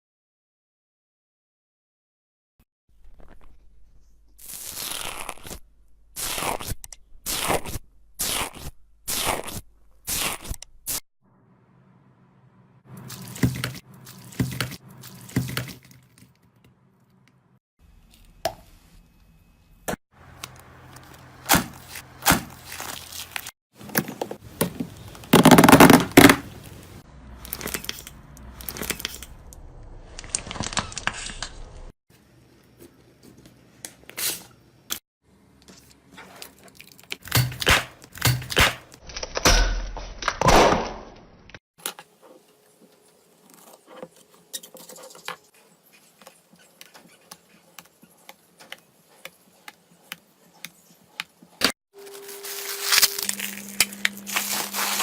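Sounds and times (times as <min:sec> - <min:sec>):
sticky tearing slime: 0:04.4 - 0:05.6, 0:06.2 - 0:10.6.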